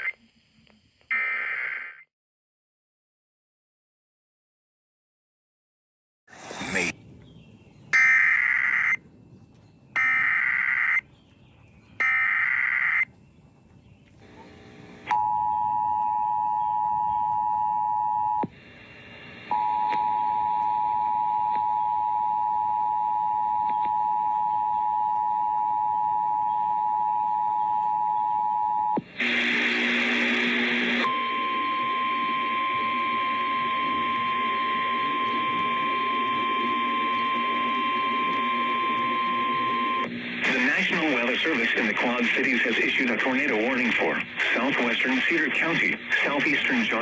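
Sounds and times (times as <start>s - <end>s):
screeching digital data tones: 1.1s - 2.0s, 8.0s - 9.0s, 10.0s - 11.0s
two-tone attention beep: 31.1s - 40.1s.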